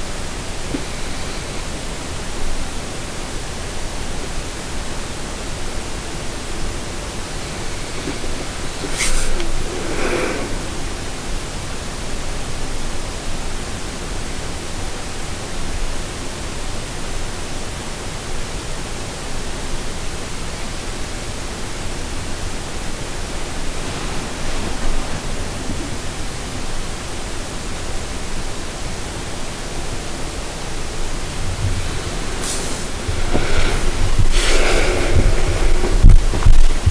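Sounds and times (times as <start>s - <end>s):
loud steady hiss: 0.0s - 36.9s.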